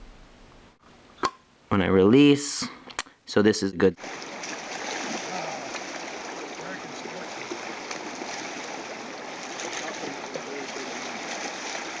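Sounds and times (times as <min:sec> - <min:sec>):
steady background hiss: 0:00.0 - 0:11.8.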